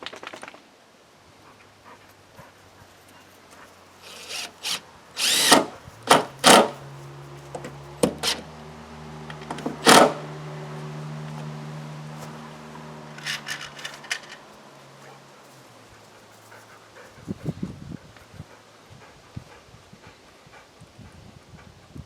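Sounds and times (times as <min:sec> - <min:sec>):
power drill bursts: 0:04.0 - 0:06.8, 0:08.0 - 0:08.5, 0:09.4 - 0:10.3.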